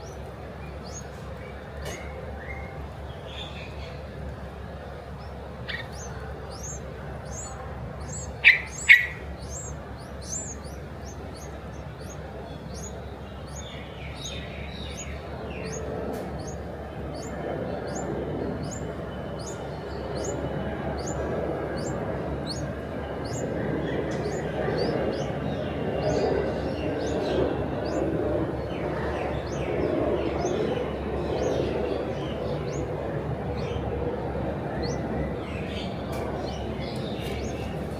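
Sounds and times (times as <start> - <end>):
small bird chirping: 0.0 - 37.7
loud sharp bird chirps: 5.2 - 28.1.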